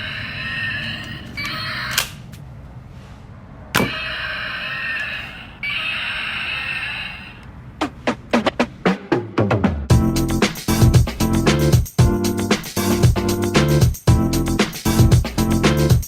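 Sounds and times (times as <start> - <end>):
electronic dinosaur roar effects: 0.0 - 1.9, 3.8 - 7.4
toy gun clicks: 1.0 - 2.3.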